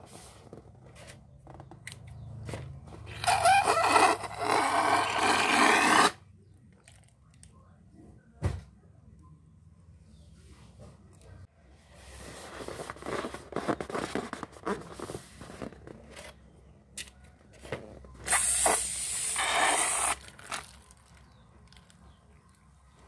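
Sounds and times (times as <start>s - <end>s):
air hissing through slime: 18.3s - 20.3s
crackly slime squishing: 20.2s - 22.6s.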